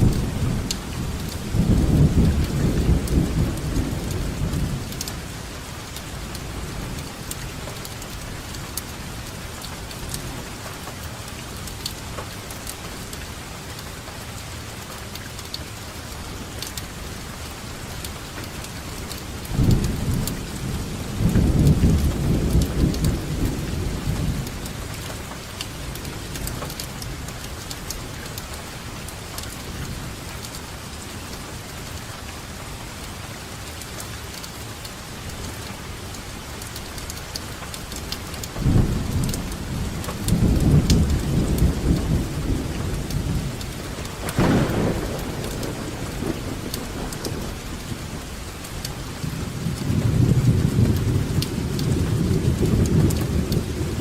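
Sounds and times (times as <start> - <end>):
thunder rumbling: 0.0 - 5.4, 19.6 - 24.9, 38.4 - 54.0
heavy rain hissing: 0.0 - 54.0
raindrops ticking: 0.0 - 54.0.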